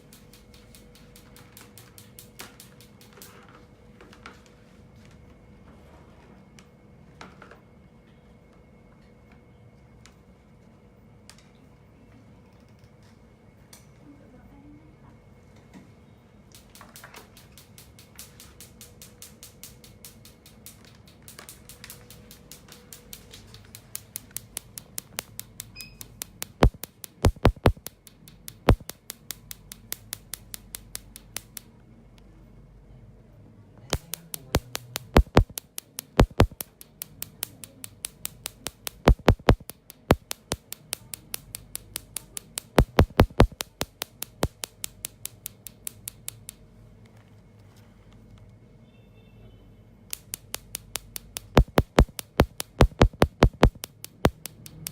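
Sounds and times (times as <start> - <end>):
laser firing sharp snaps: 22.3 - 31.6, 34.0 - 46.6, 50.2 - 54.9.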